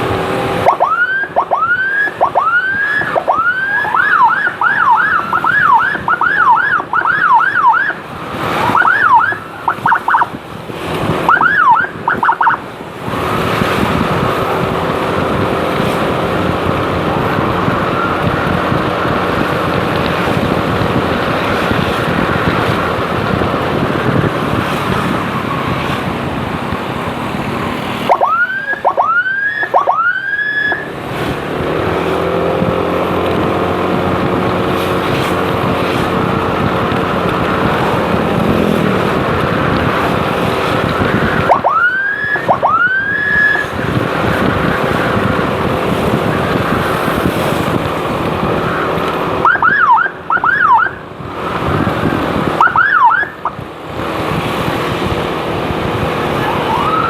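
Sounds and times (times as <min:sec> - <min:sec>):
motorcycle riding noise: 0:00.0 - 0:57.0
siren whooping: 0:00.6 - 0:10.4, 0:11.2 - 0:14.8, 0:16.6 - 0:31.0, 0:37.4 - 0:46.9, 0:48.6 - 0:53.6, 0:56.2 - 0:57.0
wind on microphone: 0:02.1 - 0:30.2, 0:30.8 - 0:57.0.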